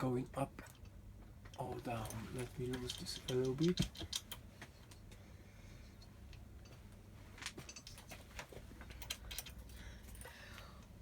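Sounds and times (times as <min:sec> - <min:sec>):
low steady hum: 0:00.0 - 0:11.0
allen key metallic clicks: 0:00.7 - 0:05.1, 0:08.8 - 0:10.2.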